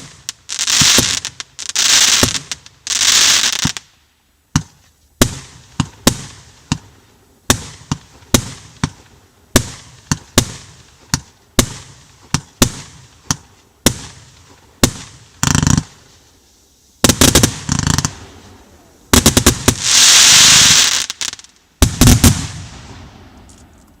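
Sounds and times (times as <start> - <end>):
fireworks bangs and volleys: 0.0 - 24.0
rush of dense noise: 16.3 - 20.8.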